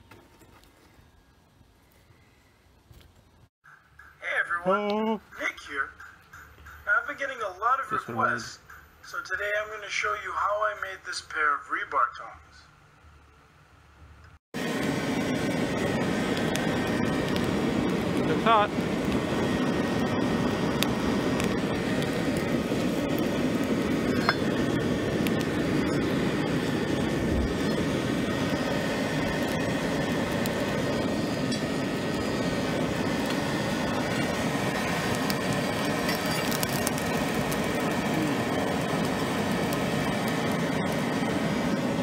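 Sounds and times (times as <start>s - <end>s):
forced air rushing: 14.6s - 42.0s
charcoal crackling and clinking: 20.5s - 27.9s, 29.2s - 40.4s.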